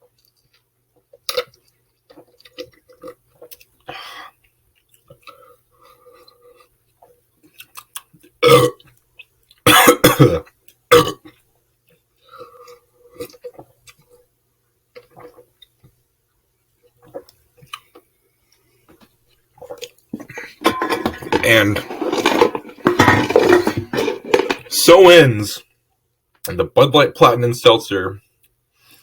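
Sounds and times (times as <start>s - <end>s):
loud burps: 8.4s - 8.8s, 9.7s - 11.3s, 20.2s - 24.5s.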